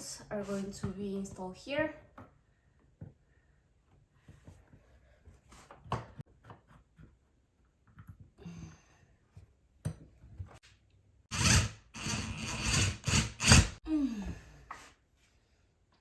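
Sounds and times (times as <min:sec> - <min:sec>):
loud rasping scraping: 0:11.3 - 0:13.8.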